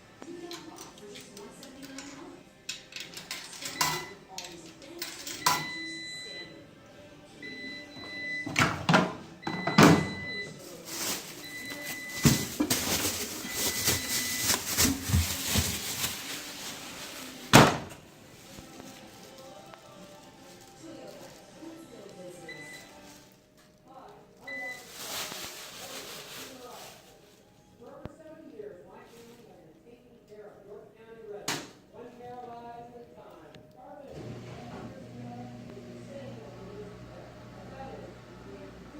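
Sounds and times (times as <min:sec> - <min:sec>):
washing machine beeps: 0:03.7 - 0:04.3, 0:05.4 - 0:06.6, 0:07.4 - 0:10.6, 0:11.4 - 0:12.7, 0:13.4 - 0:14.7, 0:22.4 - 0:23.0, 0:24.4 - 0:24.9.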